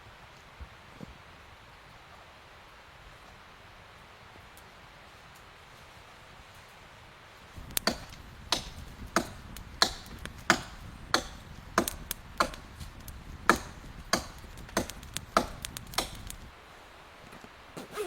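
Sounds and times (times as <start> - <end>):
sharp chopping strikes: 7.7 - 16.5.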